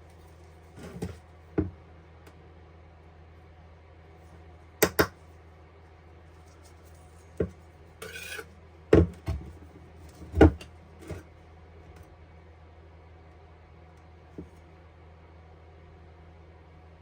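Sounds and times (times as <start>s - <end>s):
short scrape: 8.0s - 8.5s.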